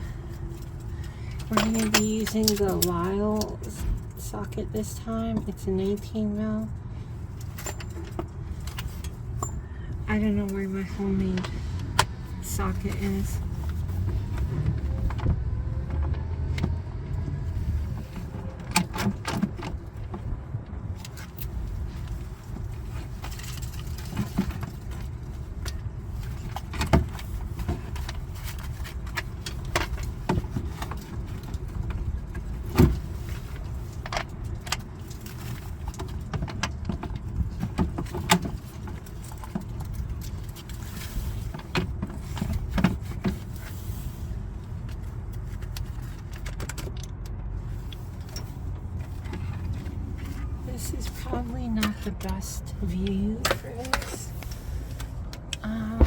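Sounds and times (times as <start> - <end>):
low steady rumble: 0.0 - 56.0
metal tools clinking: 1.4 - 3.0.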